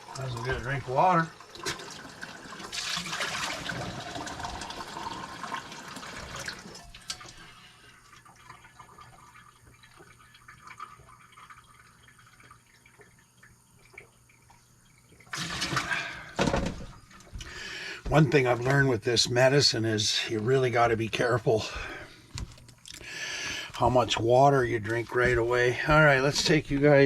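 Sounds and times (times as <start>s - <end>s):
water running from a tap: 0.0s - 14.3s.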